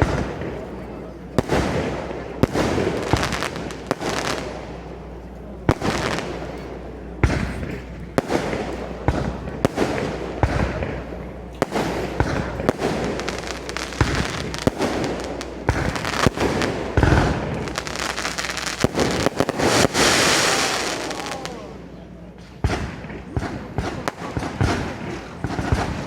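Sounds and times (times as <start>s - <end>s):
firework bursts and bangs: 0.0s - 26.0s
heavy firework boom: 5.6s - 21.7s, 22.6s - 26.0s
firework hissing crackle: 11.6s - 21.8s.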